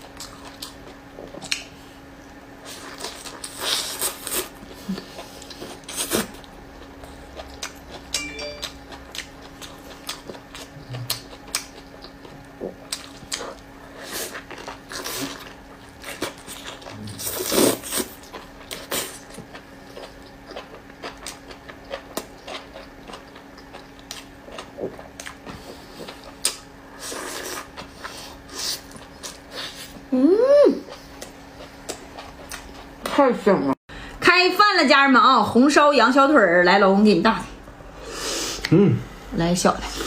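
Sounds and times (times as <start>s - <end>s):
person chewing food: 0.0s - 1.8s, 2.6s - 30.1s, 30.8s - 33.1s
faint room hum: 0.0s - 40.0s
person humming mm: 30.1s - 30.9s, 38.6s - 39.1s.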